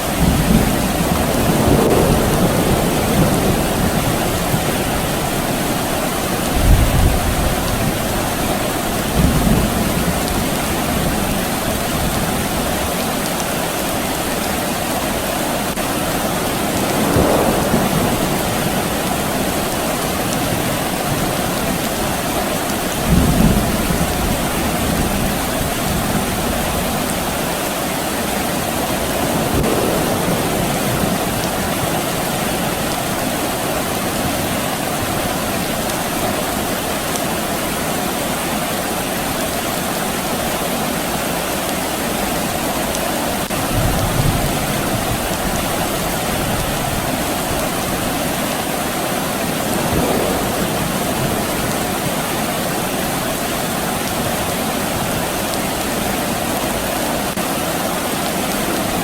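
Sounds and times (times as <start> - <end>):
distant thunder rumbling: 0.0 - 37.3, 43.4 - 56.8
steady rain falling: 0.0 - 59.0.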